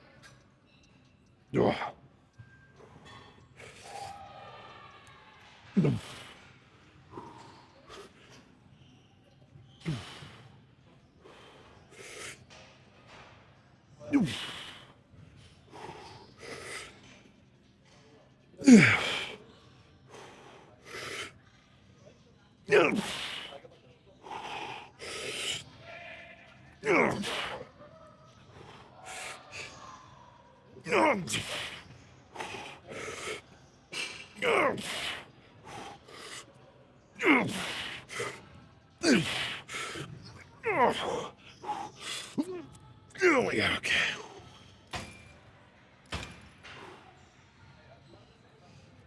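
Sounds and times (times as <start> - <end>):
man groaning with effort: 18.6 - 19.2, 26.8 - 27.4, 37.2 - 37.8, 39.0 - 39.6
man breathing heavily: 24.2 - 25.6, 31.0 - 36.6, 37.2 - 38.4.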